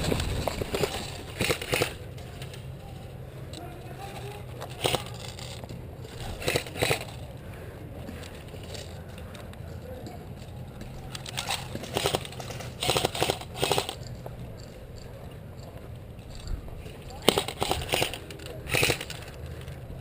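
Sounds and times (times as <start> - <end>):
airsoft guns firing: 0.0 - 2.1, 4.7 - 5.6, 6.2 - 7.2, 11.2 - 14.0, 17.2 - 19.3.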